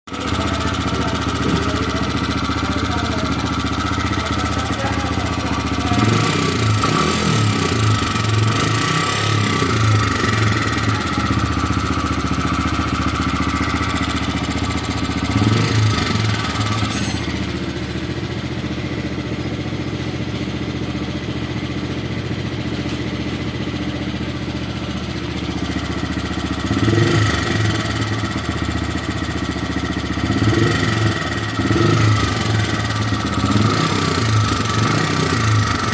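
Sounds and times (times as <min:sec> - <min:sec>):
motorcycle engine idling: 0:00.1 - 0:35.9.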